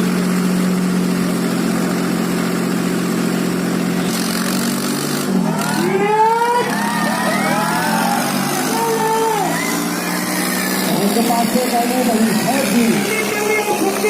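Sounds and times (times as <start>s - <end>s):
tractor diesel engines running hard: 0.0s - 14.0s
rising and falling calls: 5.6s - 11.4s.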